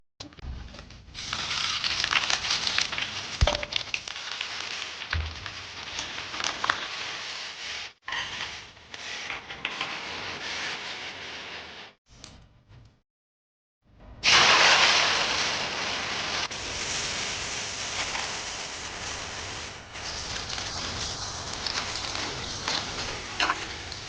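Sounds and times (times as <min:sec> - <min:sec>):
food frying in a wok: 0:01.1 - 0:08.0, 0:14.2 - 0:24.0.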